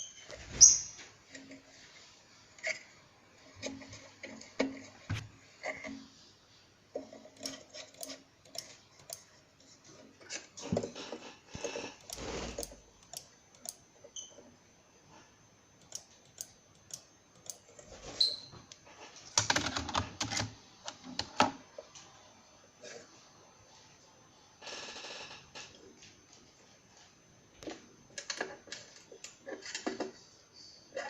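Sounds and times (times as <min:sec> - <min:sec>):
computer keyboard typing: 0:19.4 - 0:20.5.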